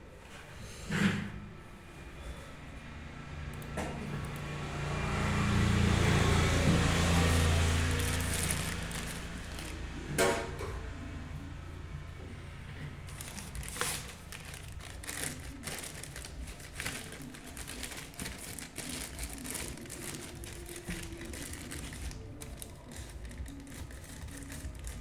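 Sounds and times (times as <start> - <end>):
packaging crinkling and rustling: 6.1 - 9.9, 13.0 - 25.0.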